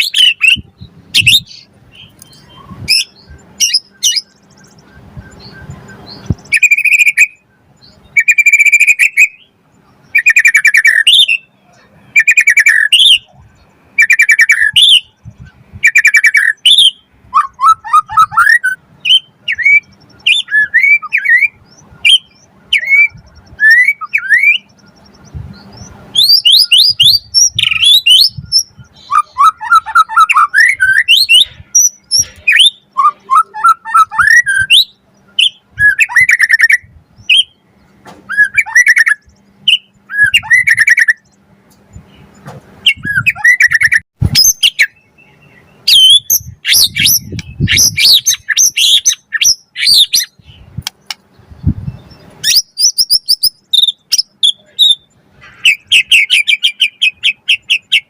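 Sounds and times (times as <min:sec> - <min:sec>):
bird singing varied song: 0:00.0 - 0:58.0.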